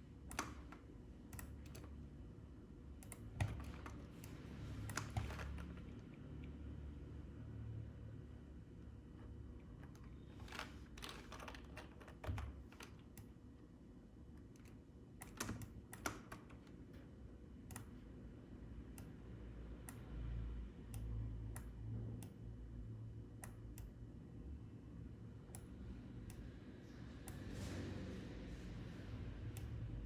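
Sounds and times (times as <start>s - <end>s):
keyboard and mouse clicking: 0.3s - 2.0s, 3.0s - 6.2s, 14.4s - 16.8s, 17.6s - 18.0s.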